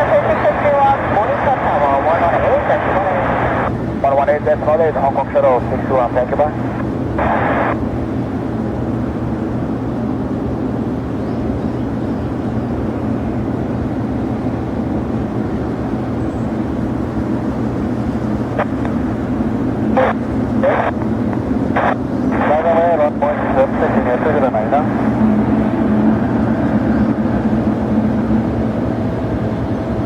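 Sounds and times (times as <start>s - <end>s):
constant low tones: 0.0s - 30.0s
jet aircraft engines rumbling: 0.0s - 30.0s
radio clicks: 18.6s - 19.0s, 20.0s - 22.5s.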